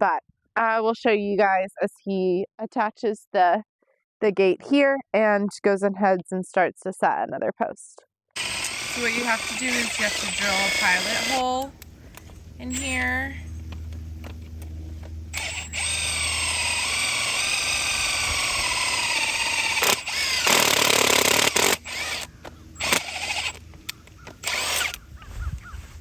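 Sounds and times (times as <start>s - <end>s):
power drill boring into wood: 8.4s - 11.8s, 12.6s - 13.2s, 15.3s - 25.0s.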